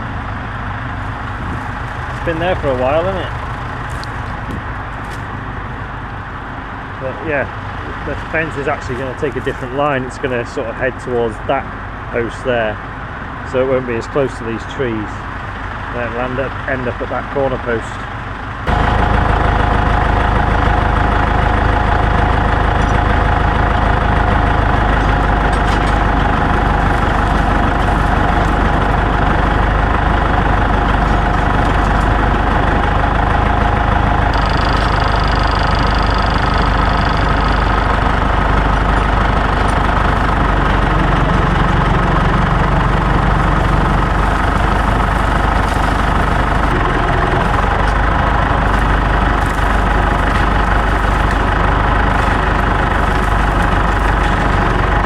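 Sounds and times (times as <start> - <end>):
tractor engine running: 0.0 - 55.0
faint whine: 34.2 - 40.4.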